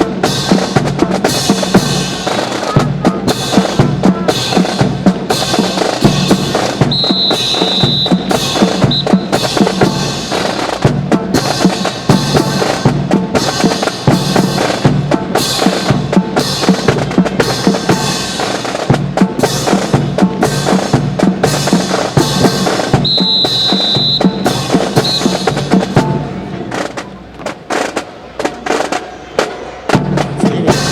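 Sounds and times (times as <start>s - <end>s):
marching snare and bass drums: 0.0s - 30.9s
high whistle blast: 6.9s - 9.4s, 23.0s - 25.6s.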